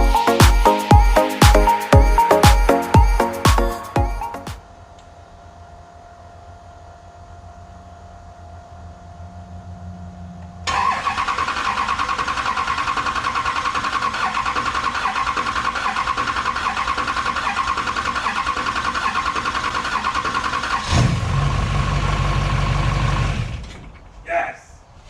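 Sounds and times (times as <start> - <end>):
diesel engine idling: 4.6 - 23.7
diesel engine cranking: 8.7 - 24.2.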